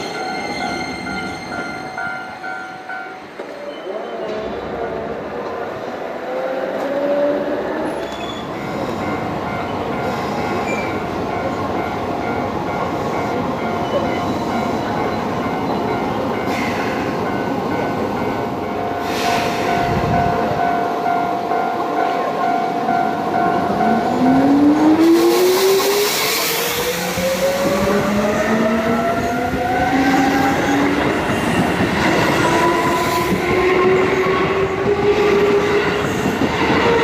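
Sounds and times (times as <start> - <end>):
high squeal: 7.9 - 8.9.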